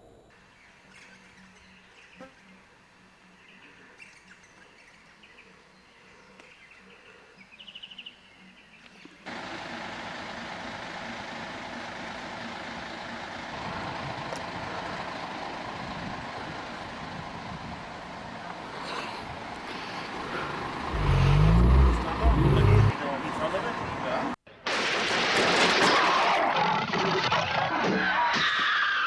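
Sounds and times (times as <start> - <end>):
birds chirping faintly: 0.0 - 9.3, 18.9 - 23.0.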